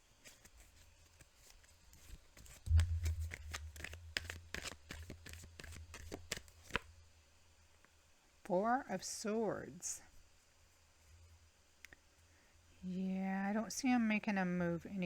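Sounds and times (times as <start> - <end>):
cards shuffling: 0.2 - 6.9
low handling bump: 2.7 - 4.1.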